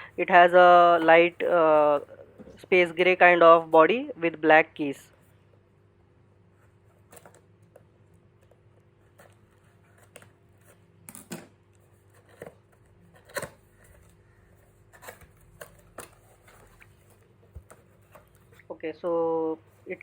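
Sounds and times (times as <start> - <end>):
plastic packaging rustling: 11.8 - 18.7.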